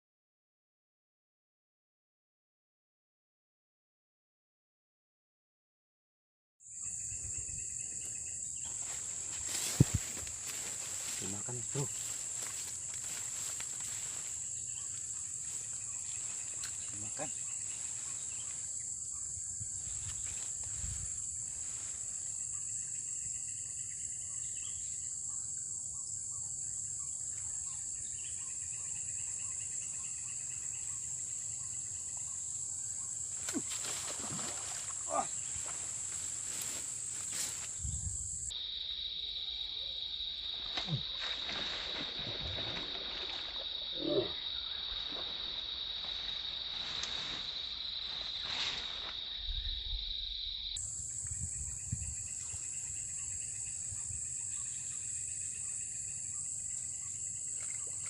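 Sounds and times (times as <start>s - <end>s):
insects droning: 6.6s - 58.0s.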